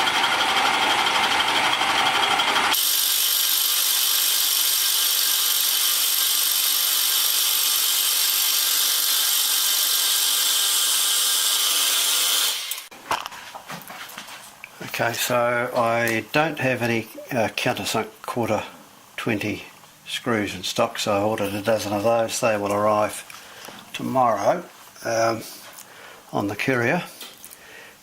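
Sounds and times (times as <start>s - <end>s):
milling machine cutting metal: 0.0s - 12.9s.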